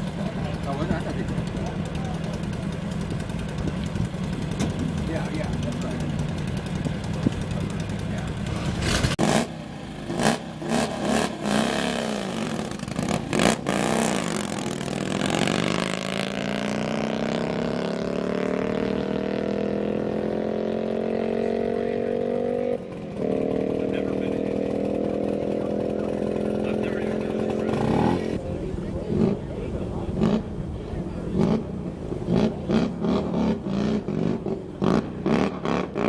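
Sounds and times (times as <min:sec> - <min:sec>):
racing engine revving and accelerating: 0:08.5 - 0:09.5, 0:10.1 - 0:28.4, 0:31.3 - 0:36.0.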